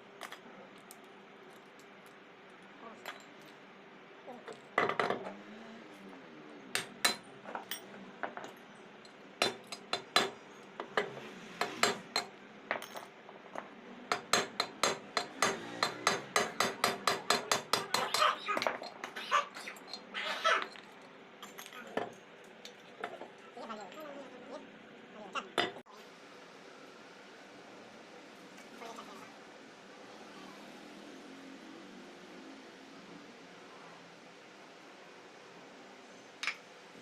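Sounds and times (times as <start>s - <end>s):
metal tools clinking and knocking: 0.2s - 3.6s, 6.8s - 16.3s, 17.0s - 23.4s, 25.6s - 25.8s.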